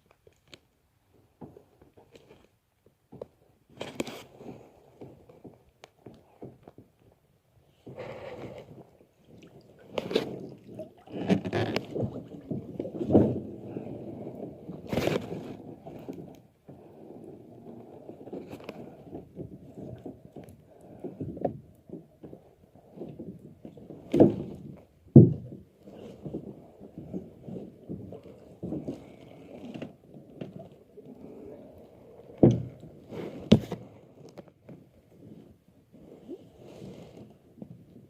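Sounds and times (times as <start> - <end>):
dull knocks: 25.1 - 25.6.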